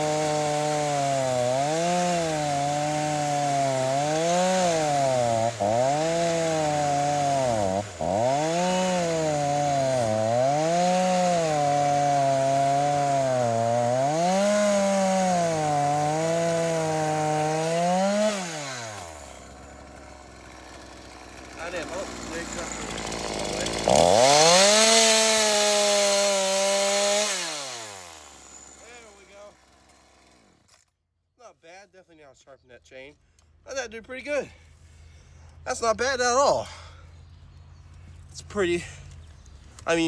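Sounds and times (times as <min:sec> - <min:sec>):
chainsaw cutting through log: 0:00.0 - 0:30.9.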